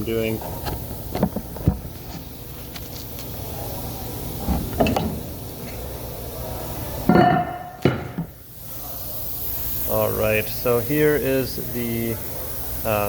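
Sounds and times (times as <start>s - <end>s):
steady low hum: 0.0s - 13.0s
handling knocks and clatter: 4.4s - 5.2s.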